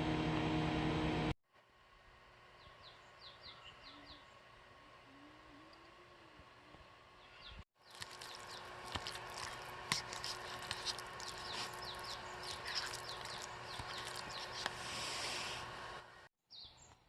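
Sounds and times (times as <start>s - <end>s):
small birds chirping: 2.6s - 4.5s, 7.2s - 15.3s, 16.5s - 17.0s.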